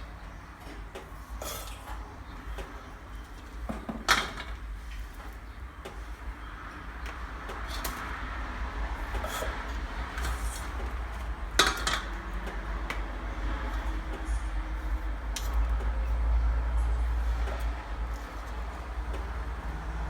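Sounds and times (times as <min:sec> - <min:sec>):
cookware and utensils clattering: 0:03.2 - 0:04.7, 0:09.0 - 0:16.2.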